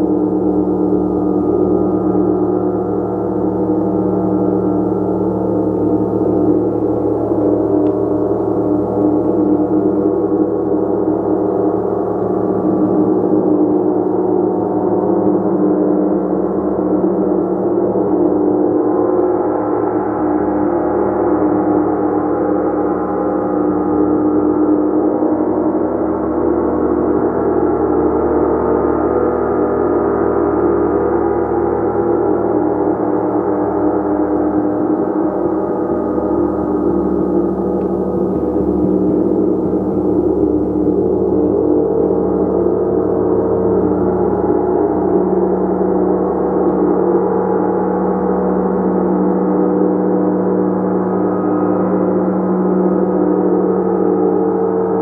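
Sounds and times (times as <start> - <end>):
gong shimmering: 0.0 - 17.0, 33.6 - 55.0.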